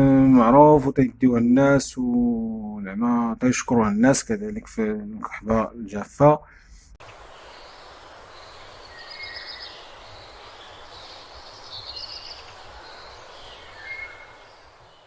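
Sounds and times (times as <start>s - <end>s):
faint bird chirps: 7.0s - 15.0s
steady background hiss: 7.0s - 15.0s.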